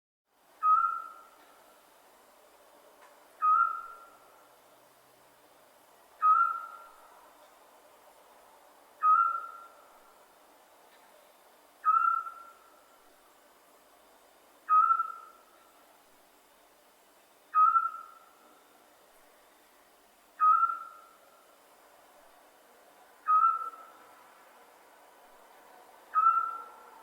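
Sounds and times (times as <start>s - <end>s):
owl whistled call: 0.6s - 1.4s, 3.4s - 4.2s, 6.2s - 7.0s, 9.0s - 9.9s, 11.8s - 12.8s, 14.7s - 15.5s, 17.5s - 18.4s, 20.4s - 21.2s, 23.2s - 23.9s, 26.1s - 26.8s.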